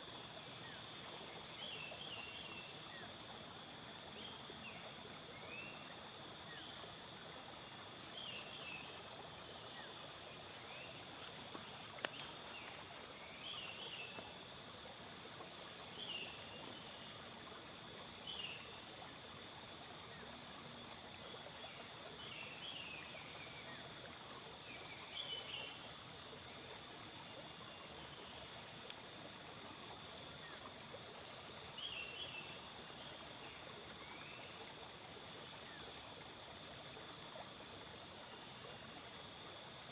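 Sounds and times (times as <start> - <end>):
insects trilling: 0.0 - 39.9.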